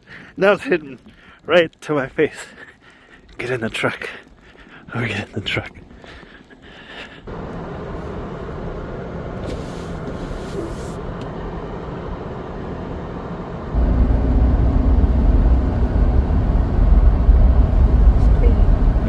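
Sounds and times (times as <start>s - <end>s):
truck engine rumbling: 7.3s - 19.0s.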